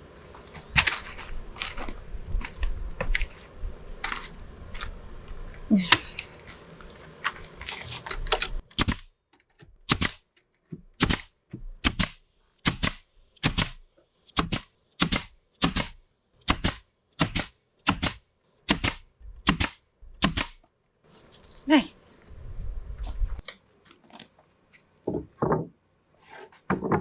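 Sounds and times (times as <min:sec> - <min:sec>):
hammer driving nails into wood: 0:08.7 - 0:09.1, 0:09.8 - 0:20.7.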